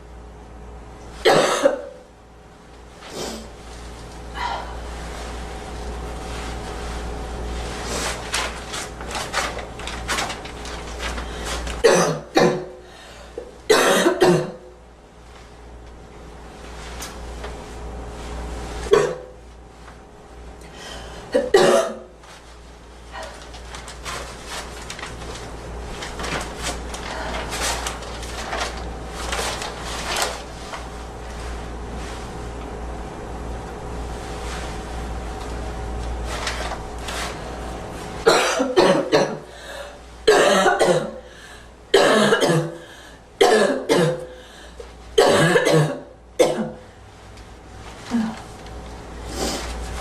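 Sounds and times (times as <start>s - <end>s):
girl coughing: 1.2s - 2.0s, 11.8s - 12.8s, 13.7s - 14.7s, 18.9s - 19.4s, 21.3s - 22.1s, 38.3s - 39.5s, 40.3s - 41.3s, 41.9s - 44.4s, 45.2s - 46.8s.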